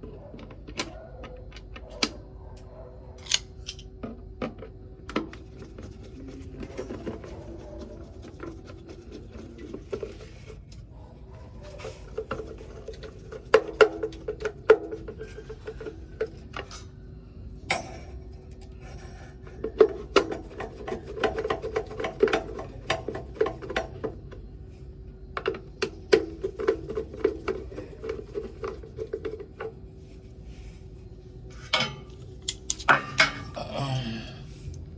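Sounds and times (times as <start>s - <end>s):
steady low hum: 0.0s - 34.9s
tools rasping and rubbing: 5.5s - 10.6s.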